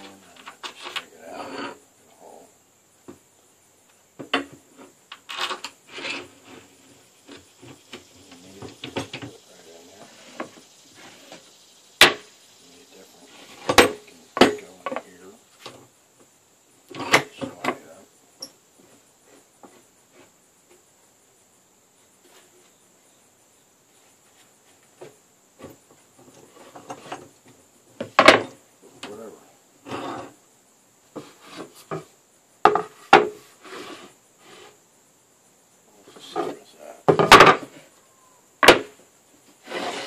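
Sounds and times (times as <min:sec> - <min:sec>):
wooden knocks and clunks: 0:03.0 - 0:03.2, 0:04.2 - 0:05.7, 0:06.6 - 0:09.4, 0:13.6 - 0:16.3, 0:24.8 - 0:29.2, 0:31.1 - 0:33.4, 0:36.4 - 0:37.8, 0:38.6 - 0:39.0.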